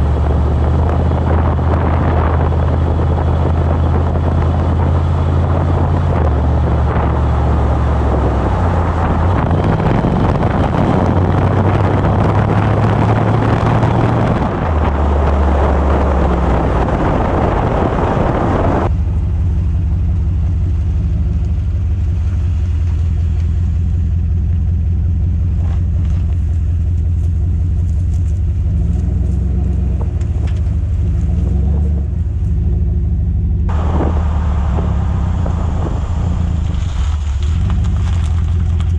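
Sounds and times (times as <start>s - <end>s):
deep exhaust drone: 0.0s - 38.9s
loud rushing noise: 33.7s - 37.6s.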